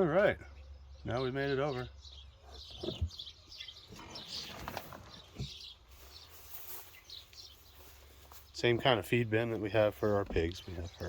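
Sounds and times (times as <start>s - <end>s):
birds chirping faintly: 0.0s - 11.0s.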